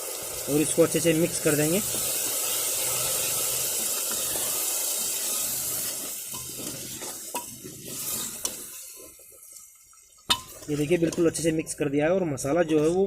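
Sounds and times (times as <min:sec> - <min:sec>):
spices sizzling in hot oil: 0:00.0 - 0:12.0
spoon scraping pot: 0:02.8 - 0:09.3, 0:10.3 - 0:11.6.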